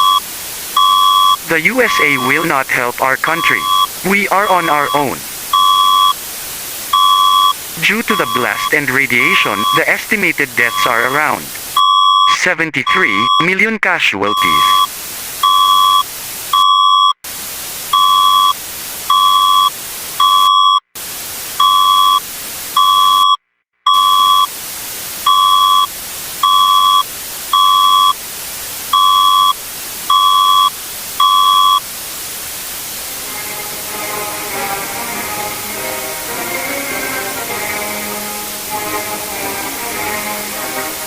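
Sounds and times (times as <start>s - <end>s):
two-pitch emergency alert beeps: 0.0s - 0.2s, 0.8s - 6.2s, 7.0s - 14.9s, 15.5s - 16.0s, 16.6s - 17.2s, 19.1s - 20.8s, 22.8s - 24.5s, 25.3s - 27.0s, 27.6s - 28.2s, 29.0s - 31.8s
static hiss: 0.0s - 16.6s, 17.3s - 23.2s, 23.9s - 41.0s.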